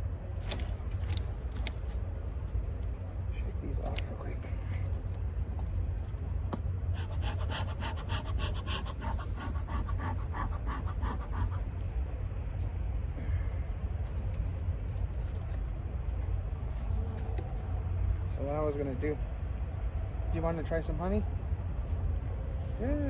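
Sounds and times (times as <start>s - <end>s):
steady low rumble: 0.0s - 23.0s
rapid rhythmic swishing strokes: 6.8s - 12.6s.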